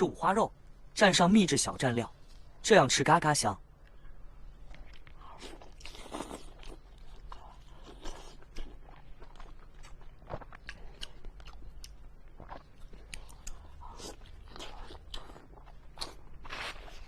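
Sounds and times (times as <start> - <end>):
person chewing crunchy food: 3.8 - 17.0.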